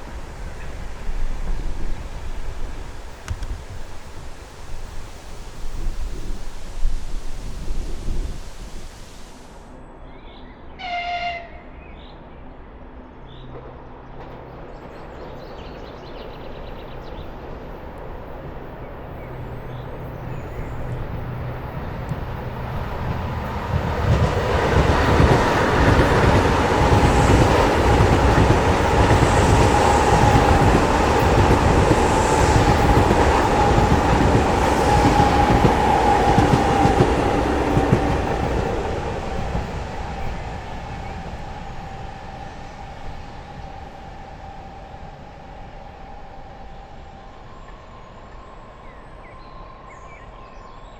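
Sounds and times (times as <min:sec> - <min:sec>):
train wheels on rails clattering: 0:13.4 - 0:42.4.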